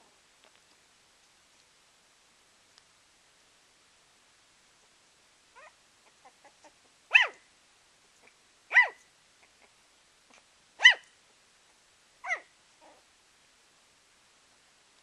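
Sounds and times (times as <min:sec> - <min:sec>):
puppy barking: 0:05.6 - 0:07.4, 0:08.7 - 0:09.0, 0:10.8 - 0:11.1, 0:12.2 - 0:13.0
puppy squeaking: 0:05.6 - 0:07.4, 0:08.7 - 0:09.0, 0:10.8 - 0:11.0, 0:12.2 - 0:12.5.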